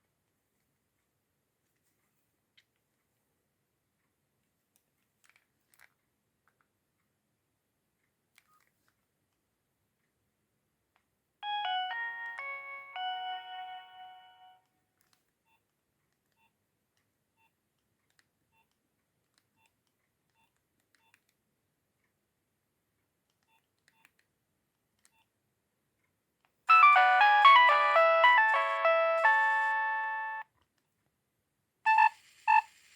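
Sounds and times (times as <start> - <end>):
mobile phone ringtone melody: 11.4 - 14.6, 26.7 - 30.4
polyphonic ringtone: 11.4 - 14.6, 26.7 - 30.4.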